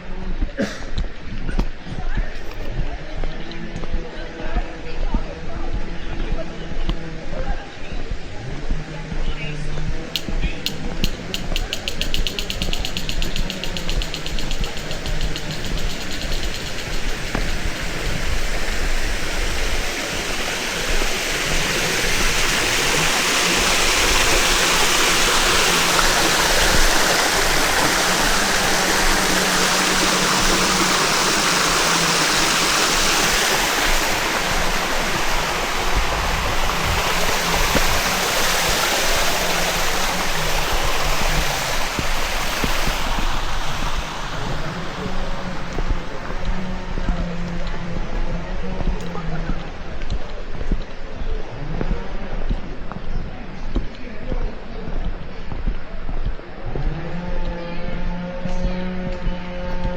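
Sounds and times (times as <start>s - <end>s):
water rushing in a stream: 9.8s - 51.1s.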